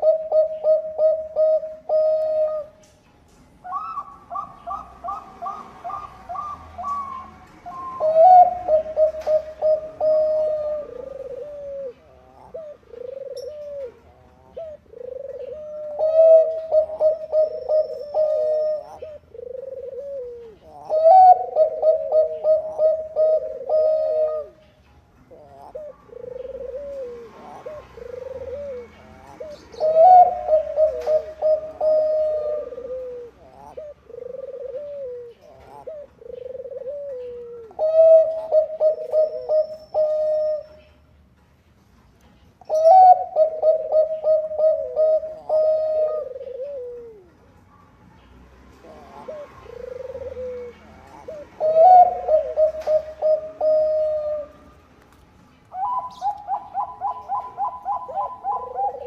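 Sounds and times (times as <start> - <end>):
dove cooing: 0.0 - 2.9, 3.6 - 41.0, 42.6 - 47.8, 48.7 - 59.0.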